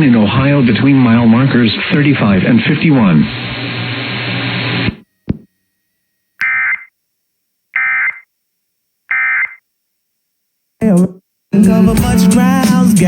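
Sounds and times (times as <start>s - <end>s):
buzzy digital data bursts: 6.4s - 6.9s.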